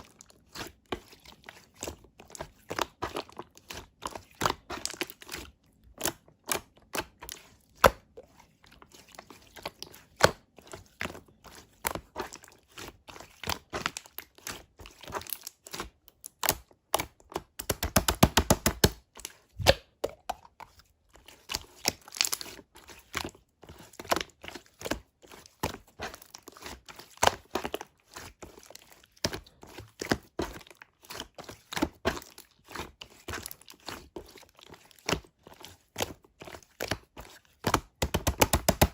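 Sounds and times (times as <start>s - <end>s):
slime squishing with clicks and pops: 2.4s - 8.3s, 13.4s - 22.6s, 36.0s - 38.9s.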